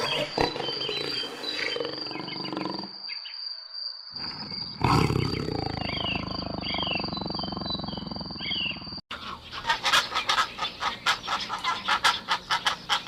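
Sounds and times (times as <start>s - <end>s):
big cat growling: 0.0s - 3.0s, 4.2s - 9.0s
bird chirps: 0.0s - 13.0s
harsh animal calls: 4.2s - 13.0s.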